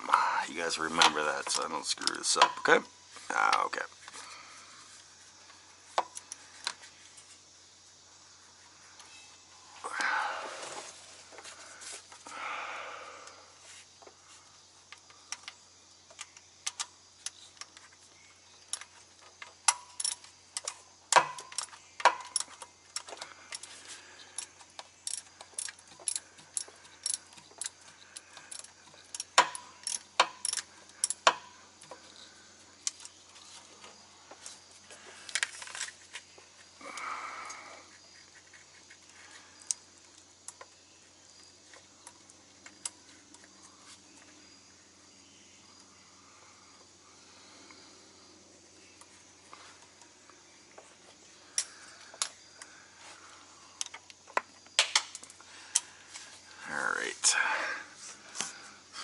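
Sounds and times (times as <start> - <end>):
hand tools clinking on metal: 0.8 - 2.8.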